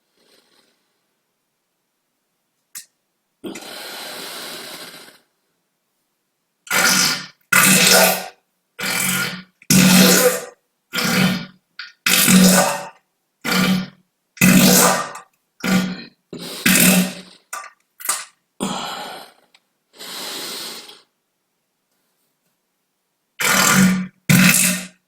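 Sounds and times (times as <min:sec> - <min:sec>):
farts: 0:06.7 - 0:18.4, 0:23.4 - 0:25.0.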